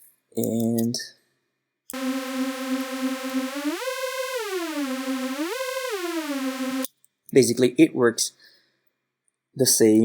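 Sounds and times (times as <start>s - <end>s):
buzzy synthesizer riser: 2.0s - 6.9s.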